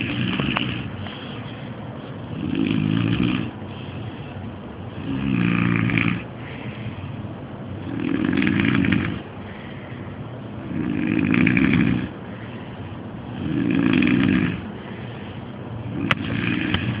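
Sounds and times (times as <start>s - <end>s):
man snoring loudly: 0.0s - 0.9s, 2.3s - 3.5s, 5.0s - 6.2s, 7.8s - 9.2s, 10.7s - 12.1s, 13.4s - 14.6s, 15.9s - 17.0s.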